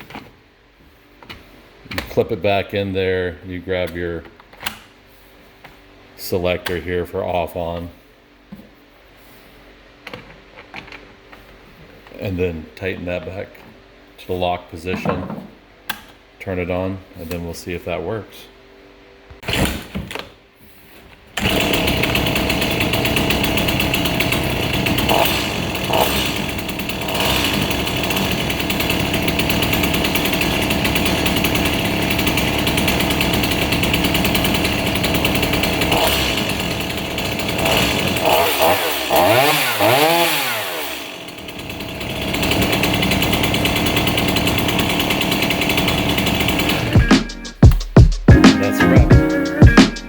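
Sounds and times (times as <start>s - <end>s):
two-stroke chainsaw engine running: 21.4s - 47.7s.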